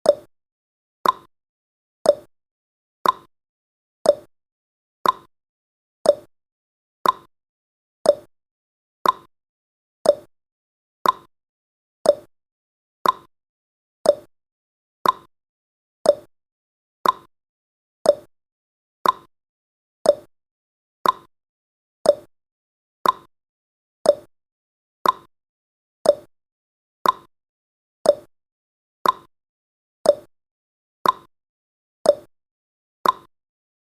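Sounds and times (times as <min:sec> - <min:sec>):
clock-like tick-tock: 0:00.0 - 0:00.3, 0:01.0 - 0:01.3, 0:02.0 - 0:02.3, 0:03.0 - 0:03.3, 0:04.0 - 0:04.3, 0:05.0 - 0:05.3, 0:06.0 - 0:06.3, 0:07.0 - 0:07.3, 0:08.0 - 0:08.3, 0:09.0 - 0:09.3, 0:10.0 - 0:10.3, 0:11.0 - 0:11.3, 0:12.0 - 0:12.3, 0:13.0 - 0:13.3, 0:14.0 - 0:14.3, 0:15.0 - 0:15.3, 0:16.0 - 0:16.3, 0:17.0 - 0:17.3, 0:18.0 - 0:18.3, 0:19.0 - 0:19.3, 0:20.0 - 0:20.3, 0:21.0 - 0:21.3, 0:22.0 - 0:22.3, 0:23.0 - 0:23.3, 0:24.0 - 0:24.3, 0:25.0 - 0:25.3, 0:26.0 - 0:26.3, 0:27.0 - 0:27.3, 0:28.0 - 0:28.4, 0:29.0 - 0:29.4, 0:30.0 - 0:30.4, 0:31.0 - 0:31.4, 0:32.0 - 0:32.4, 0:33.0 - 0:33.4.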